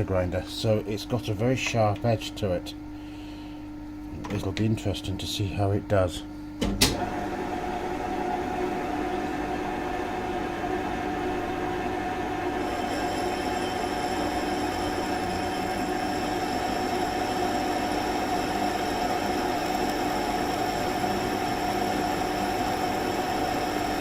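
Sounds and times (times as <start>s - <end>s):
metal lathe running: 7.4s - 24.0s
high-pitched cutting squeal: 12.6s - 16.7s.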